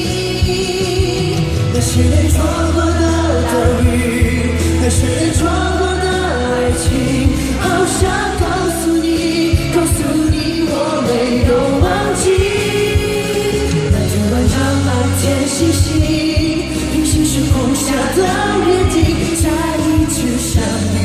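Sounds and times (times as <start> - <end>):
live pop band: 0.0 - 21.0
person singing: 0.0 - 21.0
drum beat: 0.4 - 8.8, 11.4 - 20.8.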